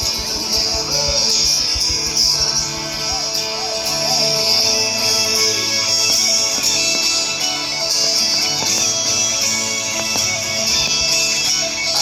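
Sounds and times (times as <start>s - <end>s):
guitar with wavering held notes: 0.0s - 12.0s.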